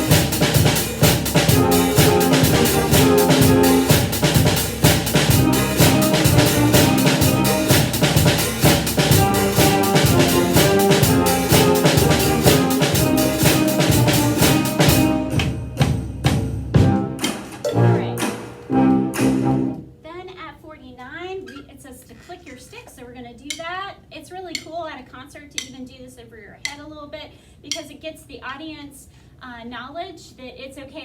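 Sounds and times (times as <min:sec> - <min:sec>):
drum kit playing: 0:00.0 - 0:19.8
recorded band accompaniment: 0:00.0 - 0:19.8.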